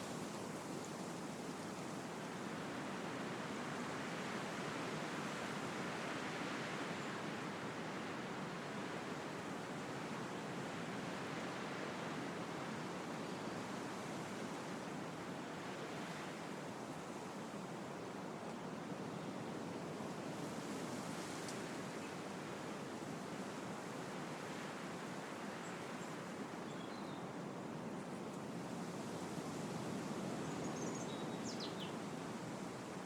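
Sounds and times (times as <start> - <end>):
wind rushing through leaves: 10.6 - 33.0.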